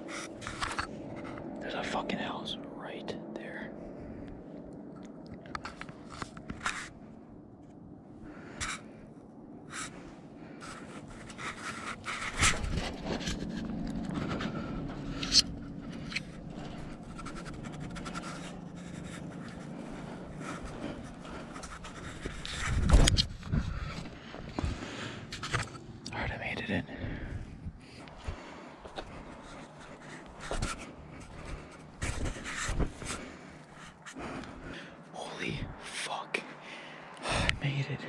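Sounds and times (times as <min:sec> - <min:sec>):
low steady hum: 0:00.0 - 0:38.0
heavy breathing: 0:03.4 - 0:04.7, 0:08.1 - 0:25.6, 0:26.8 - 0:37.9.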